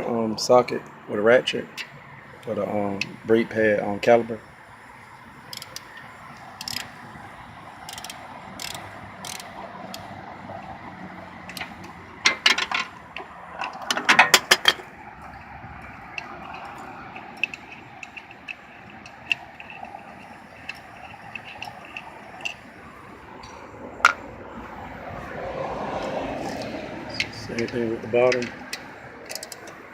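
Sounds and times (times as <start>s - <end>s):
hand ratchet clicking: 5.5s - 7.0s, 7.8s - 10.1s, 11.4s - 12.8s, 16.0s - 22.7s, 26.4s - 29.8s.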